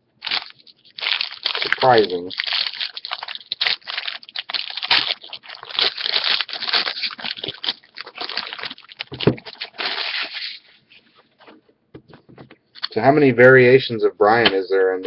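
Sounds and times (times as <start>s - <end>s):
cards and wrapping crinkling: 0.2s - 11.6s.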